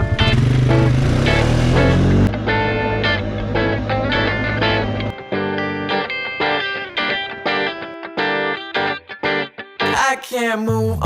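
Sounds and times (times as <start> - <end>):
low engine drone: 0.0 - 6.4
plucked guitar music: 0.0 - 10.2.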